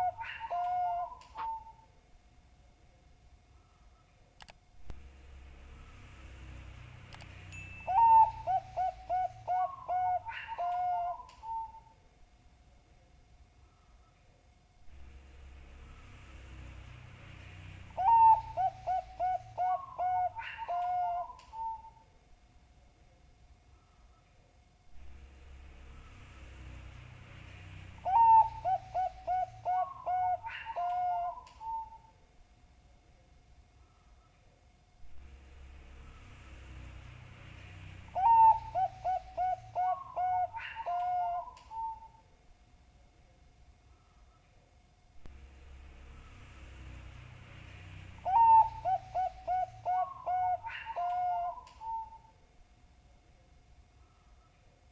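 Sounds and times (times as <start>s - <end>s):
dove cooing song: 0.0s - 1.9s, 5.6s - 12.0s, 17.4s - 22.0s, 25.7s - 32.2s, 35.9s - 42.2s, 47.7s - 52.3s.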